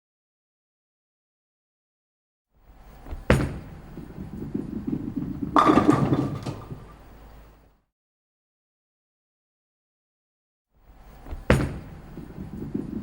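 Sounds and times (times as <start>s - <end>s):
low rumbling handling noise: 3.1s - 7.4s
clatter of knocks: 4.5s - 7.0s.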